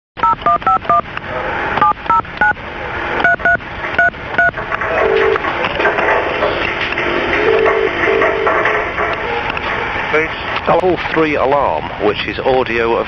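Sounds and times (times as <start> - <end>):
touch-tone keypad beeps: 0.2 - 1.0, 1.8 - 2.6, 3.2 - 5.4.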